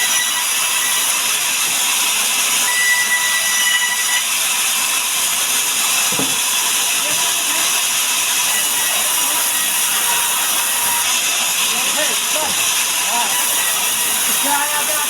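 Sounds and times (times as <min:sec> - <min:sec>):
saw cutting wood hissing: 0:00.0 - 0:15.0.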